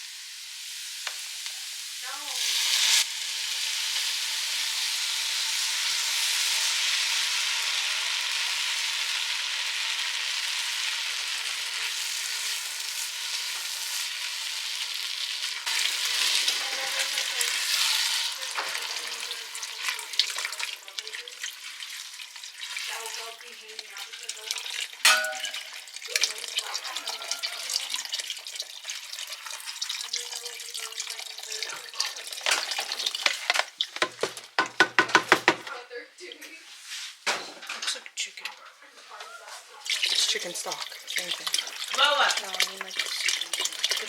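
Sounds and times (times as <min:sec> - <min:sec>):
food sizzling in a pan: 0:00.0 - 0:38.2, 0:39.2 - 0:44.0
stirring clicks: 0:31.6 - 0:35.7, 0:39.9 - 0:44.0.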